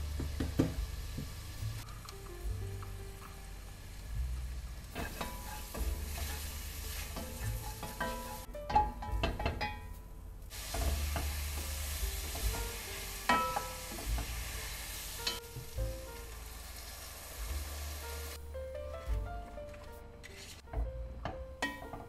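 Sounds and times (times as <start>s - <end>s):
food sizzling in a frying pan: 0.0s - 1.8s, 2.5s - 8.5s, 10.5s - 18.4s
soft background music: 0.0s - 22.0s.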